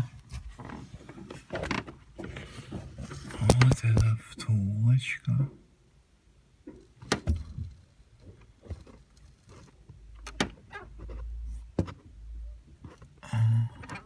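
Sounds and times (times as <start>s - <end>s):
plastic bushing creaking: 0.0s - 4.0s.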